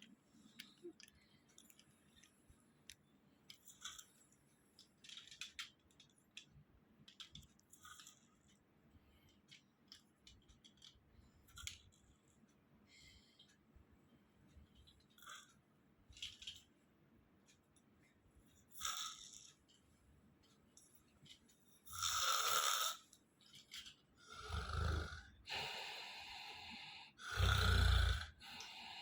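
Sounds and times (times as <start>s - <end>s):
small clicks: 0.0s - 8.6s
man snoring faintly: 24.2s - 29.0s.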